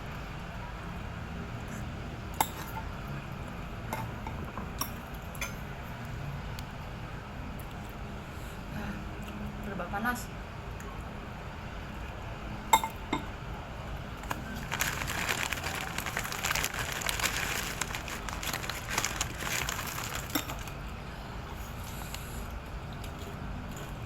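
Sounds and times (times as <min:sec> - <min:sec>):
crackly chewing: 0:14.2 - 0:20.9.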